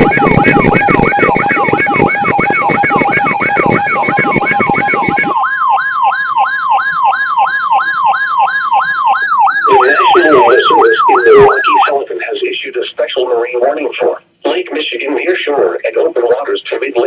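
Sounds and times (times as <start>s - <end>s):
electronic siren yelping: 0.0s - 12.0s
steady alert tone: 0.0s - 12.0s.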